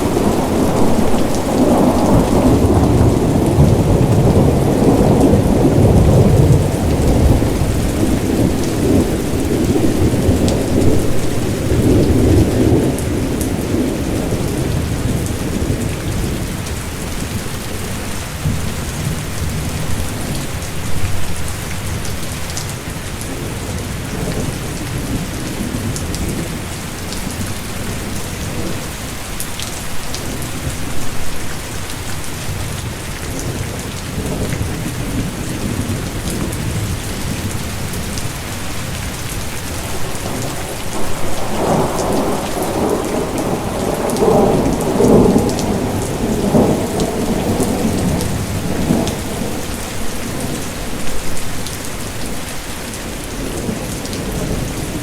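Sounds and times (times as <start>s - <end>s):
rolling thunder rumble: 0.0s - 17.8s, 32.2s - 55.0s
steady rain falling: 0.0s - 55.0s.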